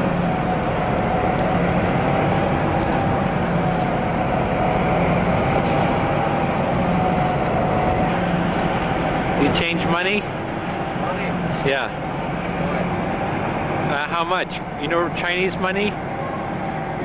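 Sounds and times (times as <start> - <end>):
train running noise: 0.0 - 17.0.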